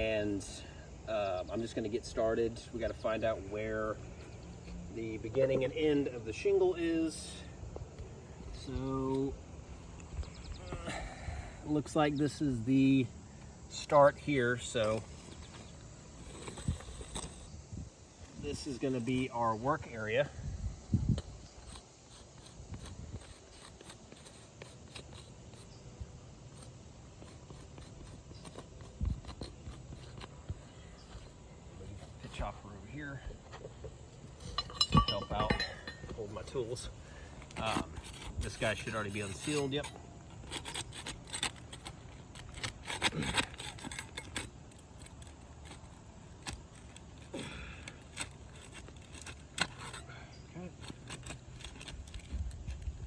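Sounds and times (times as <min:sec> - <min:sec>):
tools clicking and scraping on roof: 0:13.7 - 0:17.6, 0:21.1 - 0:32.6, 0:33.2 - 0:53.0.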